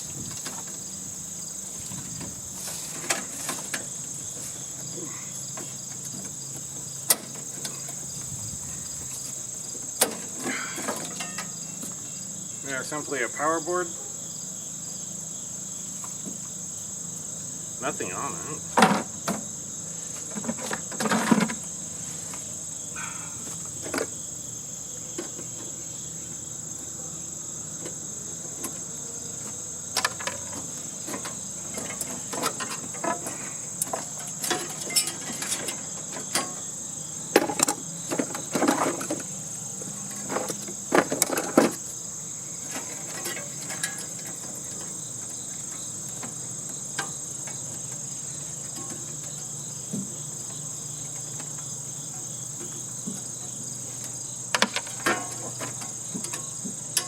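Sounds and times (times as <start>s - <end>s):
insect chorus: 0.0s - 57.0s
tools and metal parts clattering: 10.0s - 11.6s, 30.0s - 36.7s, 40.1s - 41.8s, 42.7s - 45.0s, 54.6s - 57.0s.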